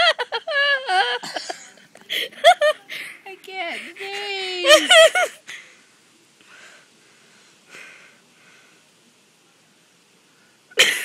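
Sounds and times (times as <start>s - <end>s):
faint breathy inhalations: 5.4s - 9.1s.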